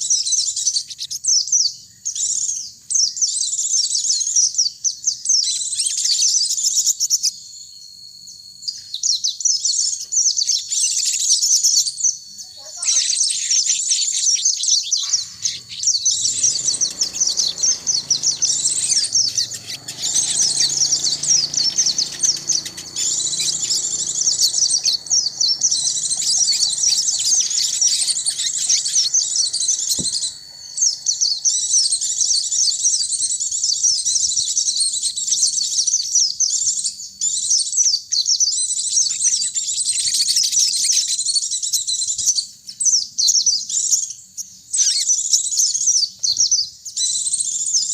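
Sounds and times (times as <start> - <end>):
birds twittering: 12.8 - 34.7.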